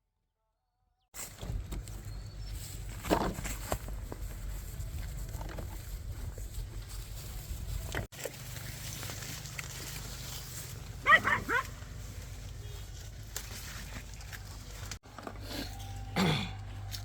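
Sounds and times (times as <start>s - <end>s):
dog yelping barks: 11.0s - 11.8s.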